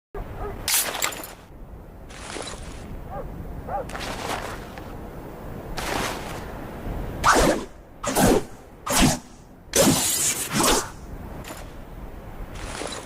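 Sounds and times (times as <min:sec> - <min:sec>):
sword slash swishes: 0:07.2 - 0:11.0.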